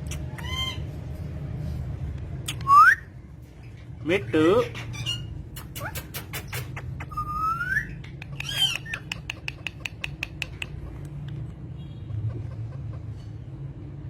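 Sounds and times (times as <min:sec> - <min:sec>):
parrot squawk: 0:00.1 - 0:00.9, 0:04.7 - 0:10.8
parrot clicking chirps: 0:05.5 - 0:11.3
parrot whistling: 0:07.0 - 0:09.2.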